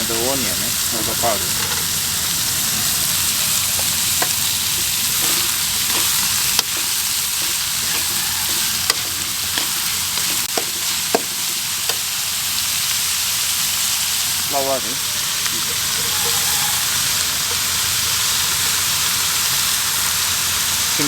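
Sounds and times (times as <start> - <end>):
vegetables sizzling in oil: 0.0 - 21.0
utensil clicking against pan: 3.6 - 12.2.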